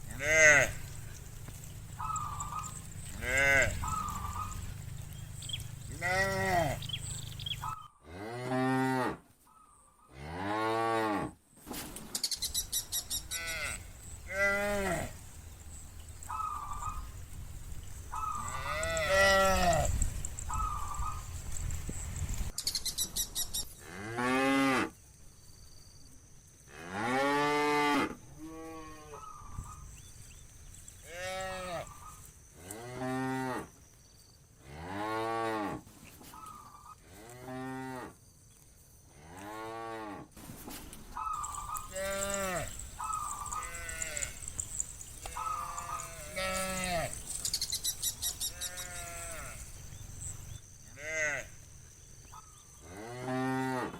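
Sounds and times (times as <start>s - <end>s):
cattle mooing: 0.0s - 1.0s, 1.9s - 7.6s, 41.3s - 47.4s.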